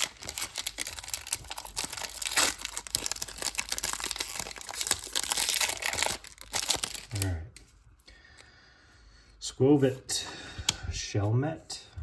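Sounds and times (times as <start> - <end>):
foil wrapper crinkling and tearing: 0.0 - 7.3
trading cards rustling: 0.0 - 7.4.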